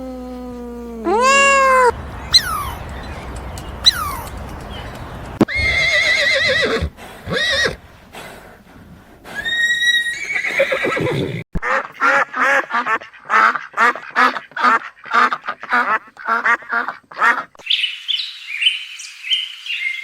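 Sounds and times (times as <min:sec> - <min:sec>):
horses whinnying: 0:01.0 - 0:07.8, 0:09.4 - 0:11.4.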